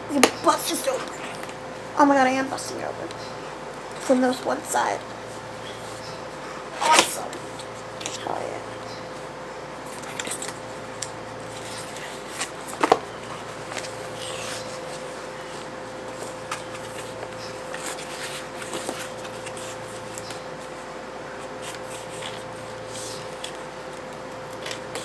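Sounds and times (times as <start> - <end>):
cardboard rustling: 11.4 - 20.8.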